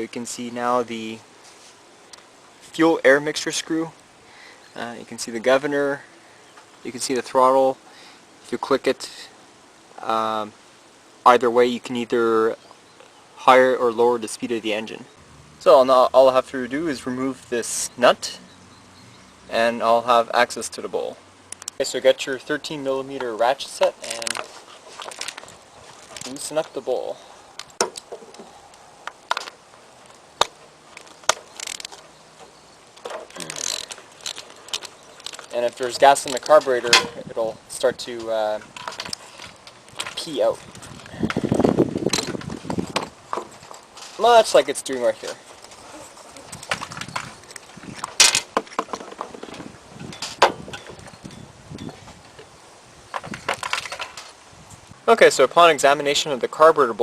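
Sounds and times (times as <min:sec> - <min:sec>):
small metal parts clicking: 0:24.0 - 0:26.4, 0:27.6 - 0:37.2, 0:38.2 - 0:42.6.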